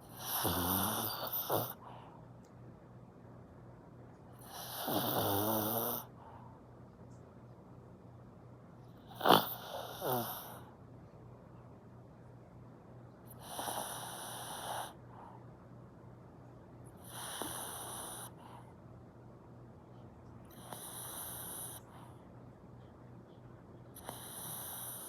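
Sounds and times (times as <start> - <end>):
dog snoring: 0.0 - 2.0, 4.4 - 6.3, 8.9 - 10.7, 13.3 - 15.0, 17.0 - 18.5, 20.5 - 22.0, 23.9 - 25.0.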